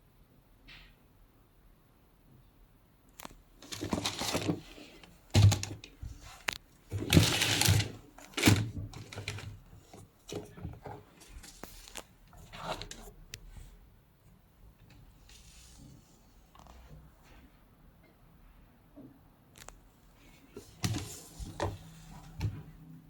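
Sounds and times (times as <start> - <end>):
rustling paper or cardboard: 3.6 - 13.7, 20.3 - 22.6.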